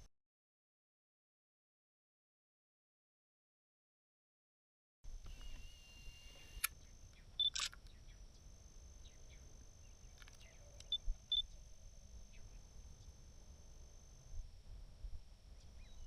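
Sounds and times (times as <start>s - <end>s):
camera beeps: 5.3s - 6.7s, 7.4s - 7.8s, 10.2s - 11.5s
camera shutter click: 5.3s - 6.8s, 7.4s - 7.8s.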